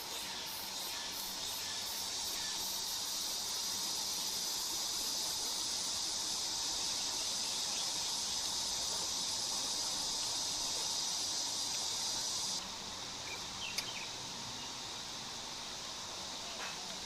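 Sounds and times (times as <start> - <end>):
faint click: 13.7 - 14.0.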